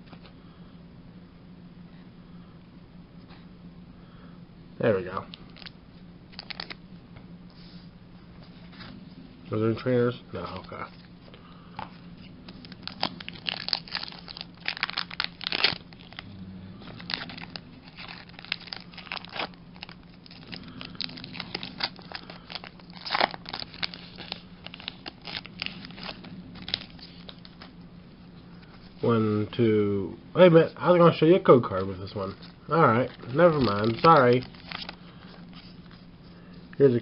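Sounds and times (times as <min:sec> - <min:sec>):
faint low hum: 0:00.0 - 0:37.0
foil wrapper crinkling and tearing: 0:05.4 - 0:06.8, 0:12.5 - 0:16.3, 0:16.9 - 0:27.7, 0:32.2 - 0:36.0.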